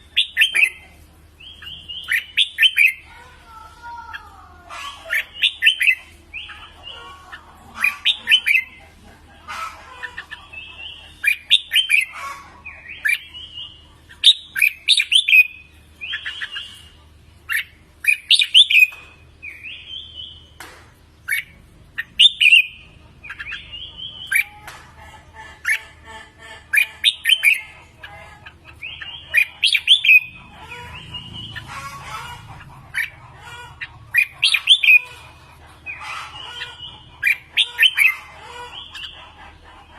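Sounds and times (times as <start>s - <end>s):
bird singing whistled phrases: 14.3s - 16.8s.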